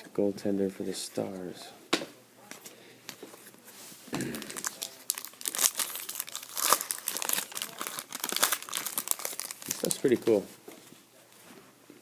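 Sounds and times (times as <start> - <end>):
wrapper tearing and crinkling: 4.4 - 10.2.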